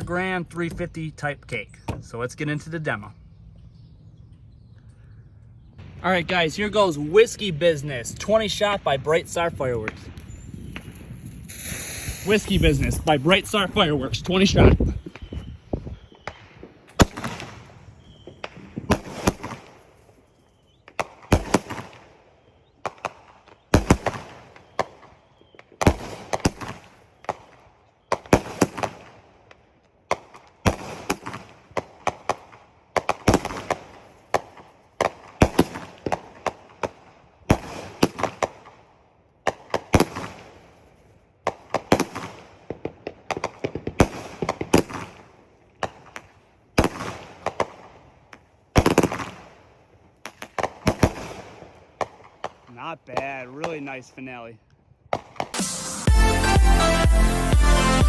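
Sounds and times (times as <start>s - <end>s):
firework launch reports: 5.8s - 15.3s, 52.6s - 54.6s
firework bangs and crackles: 5.8s - 20.2s, 20.8s - 54.4s, 55.1s - 56.1s.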